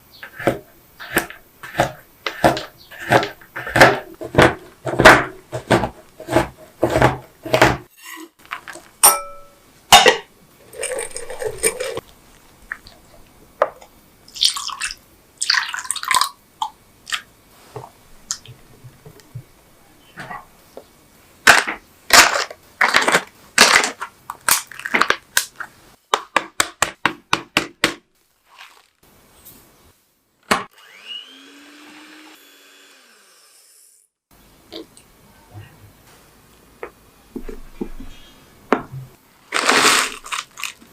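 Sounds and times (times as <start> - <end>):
sharp knocks of food chopping: 0.4 - 7.9, 26.2 - 28.0
scraping and rustling: 10.6 - 13.2, 28.4 - 29.8.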